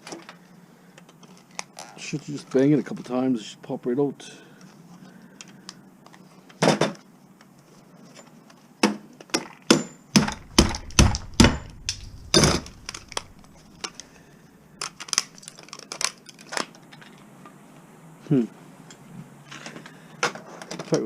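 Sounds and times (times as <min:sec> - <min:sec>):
metal part being banged: 0:10.2 - 0:13.9.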